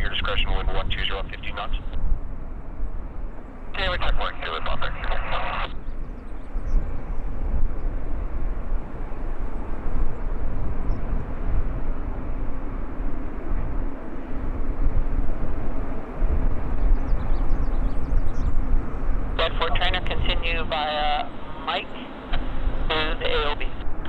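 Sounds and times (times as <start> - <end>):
jet airliner rushing: 0.0 - 24.0
wind buffeting microphone: 0.0 - 24.0.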